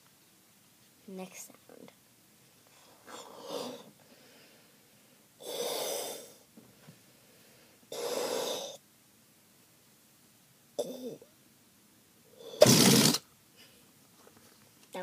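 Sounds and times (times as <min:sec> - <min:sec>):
breath blown into balloon: 0:05.4 - 0:06.4, 0:07.9 - 0:08.8, 0:12.4 - 0:13.2.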